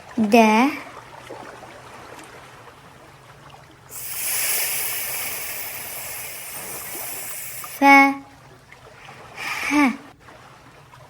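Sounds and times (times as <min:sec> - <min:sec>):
surf washing in: 0:03.9 - 0:07.9.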